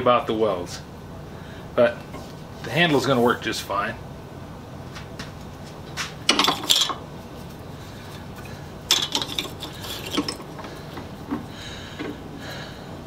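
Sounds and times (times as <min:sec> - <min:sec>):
metal parts clinking: 0:06.3 - 0:07.0, 0:08.1 - 0:11.0.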